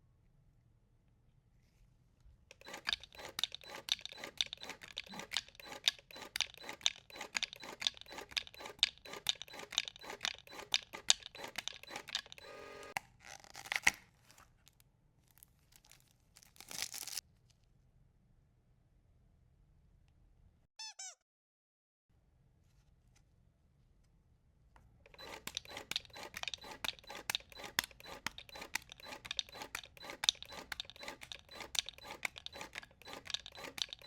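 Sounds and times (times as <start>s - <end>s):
steady rasp: 2.5s - 13.0s, 25.1s - 34.0s
plastic packaging tearing: 13.0s - 17.2s.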